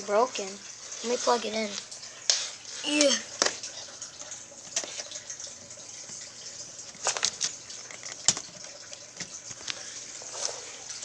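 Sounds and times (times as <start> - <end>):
small objects clicking and tapping: 7.0 - 9.8.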